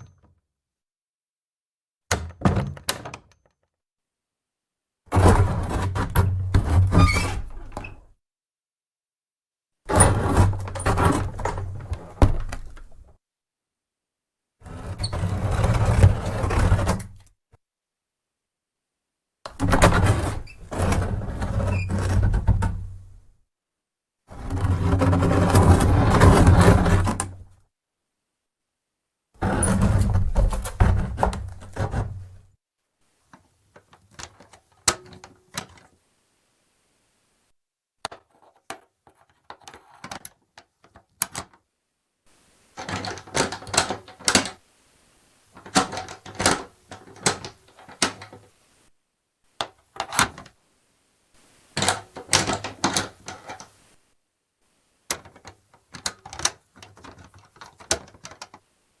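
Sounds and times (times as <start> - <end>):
wooden door opening and closing: 2.1 - 3.6, 5.1 - 8.2, 9.9 - 13.2, 19.5 - 23.2, 29.4 - 32.4, 42.8 - 44.6, 45.6 - 48.6, 51.8 - 53.9.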